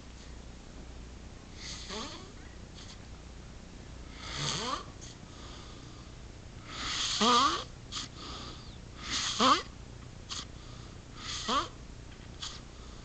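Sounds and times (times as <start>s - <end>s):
person snoring: 1.6s - 2.3s, 4.1s - 4.9s.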